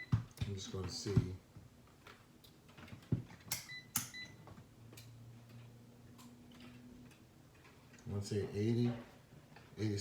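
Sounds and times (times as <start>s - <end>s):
clicks of handled meter leads: 3.5s - 4.2s.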